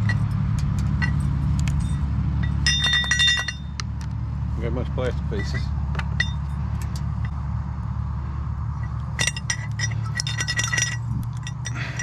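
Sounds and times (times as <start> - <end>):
metal parts clinking and rattling: 0.0 - 3.8, 5.3 - 7.4, 8.8 - 12.0
steady low hum: 0.0 - 12.0.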